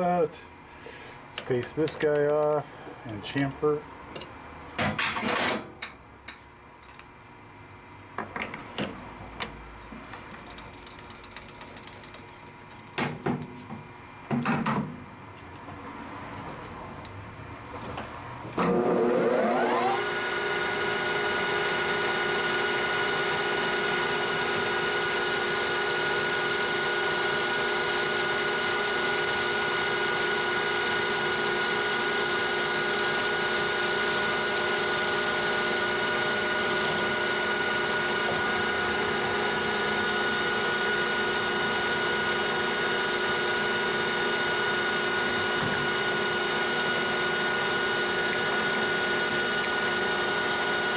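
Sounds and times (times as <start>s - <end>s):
metal lathe motor whining: 18.6s - 50.9s.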